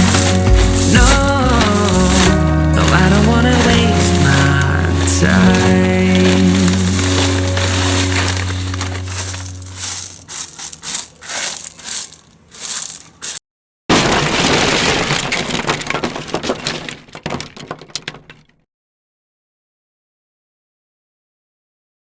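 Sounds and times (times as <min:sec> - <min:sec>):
background music: 0:00.0 - 0:11.0
gritty crunching and scraping: 0:00.0 - 0:18.5.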